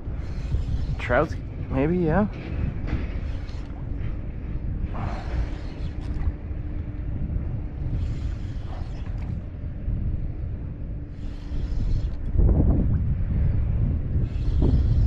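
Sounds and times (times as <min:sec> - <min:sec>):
low rumble: 0:00.0 - 0:15.0
fishing reel cranking and creaking: 0:07.8 - 0:09.4, 0:11.1 - 0:12.4, 0:14.2 - 0:15.0.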